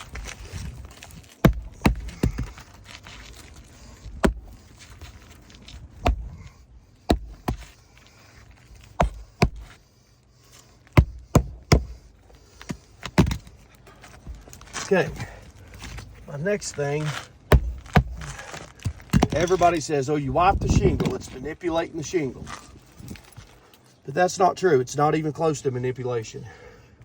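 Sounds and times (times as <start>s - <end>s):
hammer driving nails into shingles: 1.4s - 2.7s, 6.0s - 7.8s, 8.9s - 9.8s, 11.0s - 13.5s, 17.5s - 19.7s.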